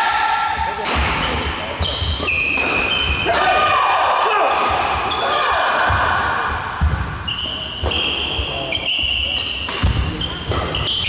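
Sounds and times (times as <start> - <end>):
shoes squeaking on floor: 1.8 - 3.2, 7.2 - 11.0
racket striking shuttlecock: 9.4 - 10.9.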